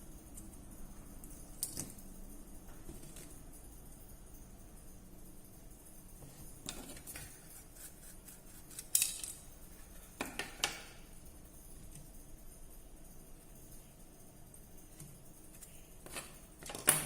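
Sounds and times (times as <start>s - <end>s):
small tools clicking and tapping: 1.2s - 3.6s, 8.6s - 11.1s, 14.9s - 17.0s.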